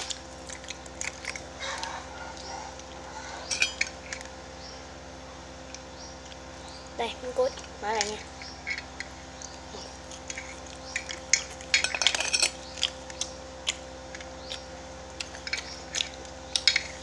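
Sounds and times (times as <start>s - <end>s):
chewing crackles: 0.0s - 17.0s
utensils clinking on plate: 3.4s - 4.2s, 10.1s - 12.9s.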